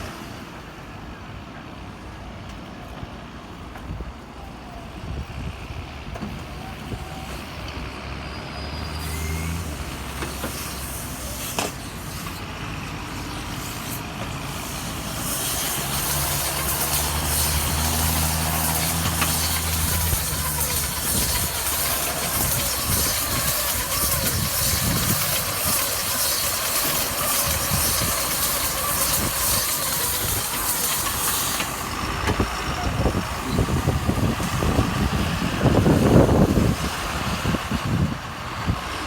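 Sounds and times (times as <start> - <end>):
large vehicle engine running: 0.0 - 39.0
strong hiss: 8.9 - 39.0.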